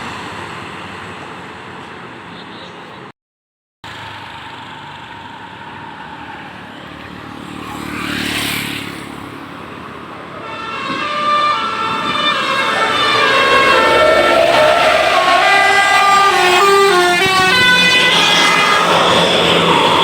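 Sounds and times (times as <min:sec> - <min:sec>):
road noise: 0:00.0 - 0:03.1, 0:03.8 - 0:20.0
vehicle passing: 0:06.6 - 0:20.0
bus multi-trumpet horn melody: 0:10.4 - 0:20.0.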